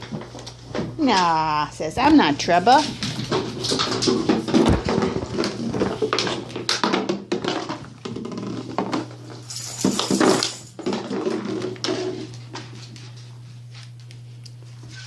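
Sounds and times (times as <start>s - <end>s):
scuffling clicks and knocks: 2.0s - 13.1s.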